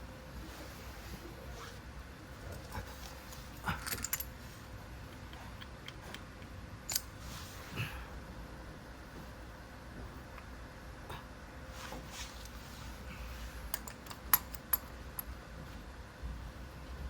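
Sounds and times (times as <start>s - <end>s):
metal tools clinking: 3.3s - 4.3s, 6.9s - 7.2s, 13.7s - 15.3s.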